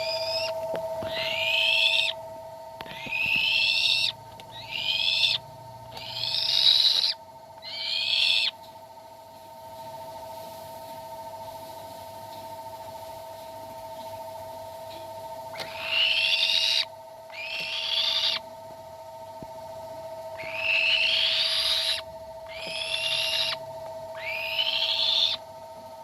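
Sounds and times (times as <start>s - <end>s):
bird of prey screaming: 0.0s - 2.2s, 2.8s - 8.6s, 15.5s - 18.4s, 20.4s - 25.4s
steady hum: 0.0s - 26.0s.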